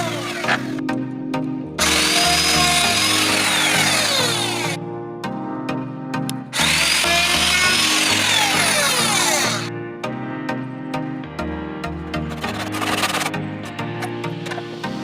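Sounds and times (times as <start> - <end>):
power tool cutting wood: 0.0 - 0.8, 1.8 - 4.8, 6.6 - 9.7, 12.3 - 13.4
background music: 0.0 - 15.0.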